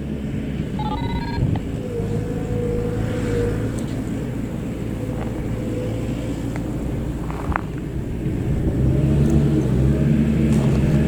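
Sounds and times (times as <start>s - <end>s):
vehicle engine running: 0.0s - 11.0s
stepped electronic tones: 0.8s - 1.7s.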